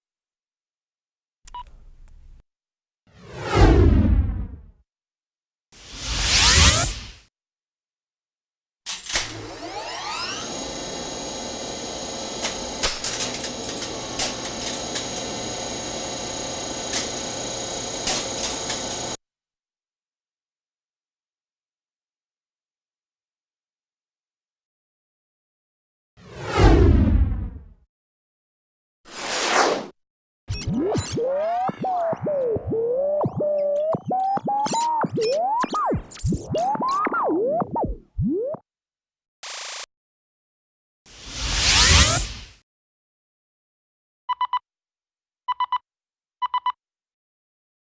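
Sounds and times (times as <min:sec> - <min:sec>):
electronic hum: 0:11.1 - 0:19.2, 0:30.6 - 0:38.6
electronic tone sliding up and down: 0:30.5 - 0:38.6, 0:41.3 - 0:42.4.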